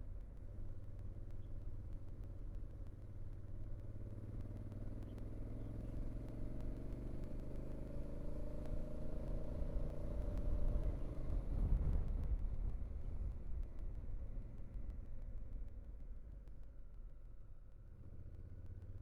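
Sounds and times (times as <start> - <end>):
vehicle engine accelerating: 4.2 - 12.3.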